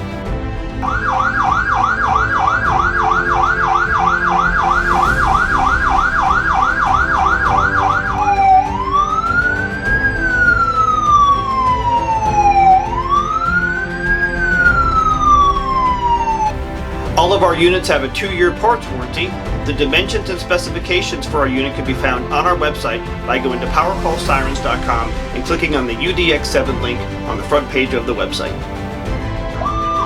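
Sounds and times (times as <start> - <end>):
electronic siren wail: 0.8 - 16.6
electronic siren yelp: 0.8 - 16.6.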